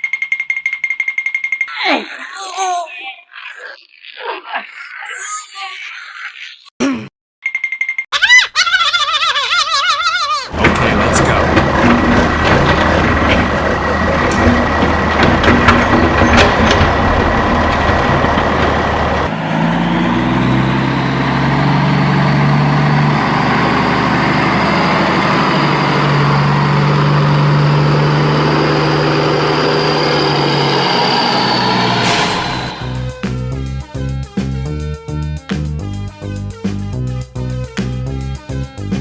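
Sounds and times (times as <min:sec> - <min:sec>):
engine hum with high whine: 0:10.5 - 0:33.8
large vehicle engine running: 0:10.5 - 0:39.0.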